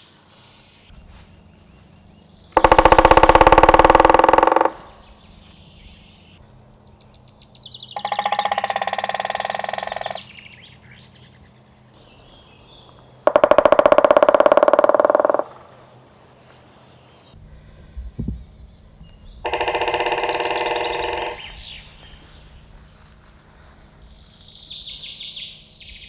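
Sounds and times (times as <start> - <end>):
small birds chirping: 0.0 - 26.0
woodpecker drumming on wood: 2.4 - 5.7, 7.8 - 10.4, 13.2 - 15.8, 19.4 - 21.8.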